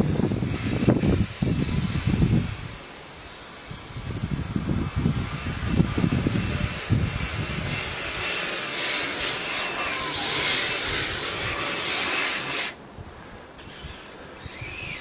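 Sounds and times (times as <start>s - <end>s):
remote-control vehicle motor whirring: 4.3s - 12.8s, 13.6s - 15.0s.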